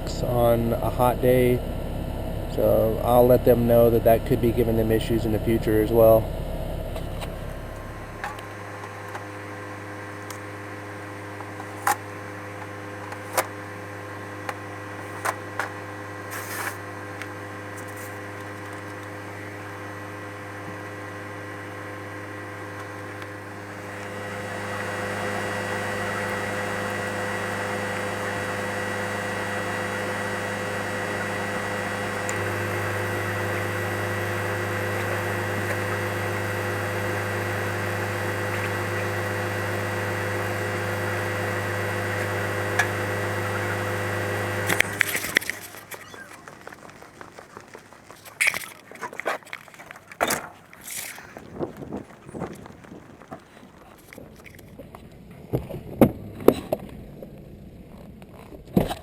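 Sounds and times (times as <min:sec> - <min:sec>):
air conditioning unit humming: 0:00.0 - 0:58.7.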